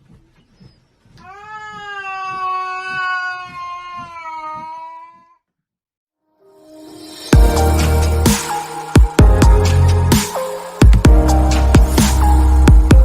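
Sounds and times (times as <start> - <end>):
cat yowling: 1.2 - 5.4.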